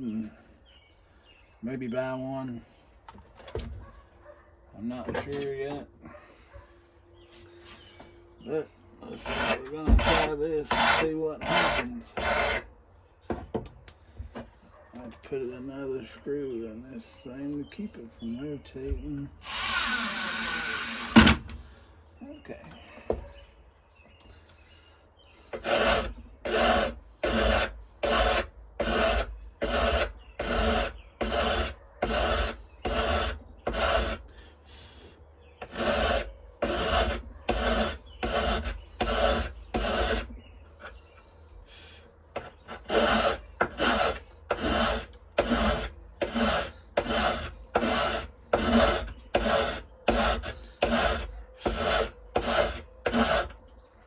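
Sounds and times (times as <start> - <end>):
hand file rasping: 9.0 - 12.7, 19.4 - 21.4, 25.4 - 41.0, 41.8 - 53.6.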